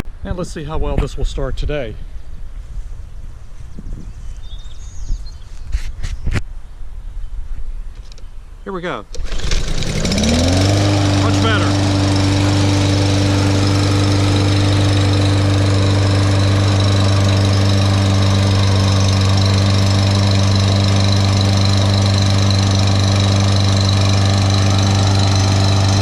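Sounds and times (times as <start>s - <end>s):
lawn mower engine running: 9.1s - 26.0s.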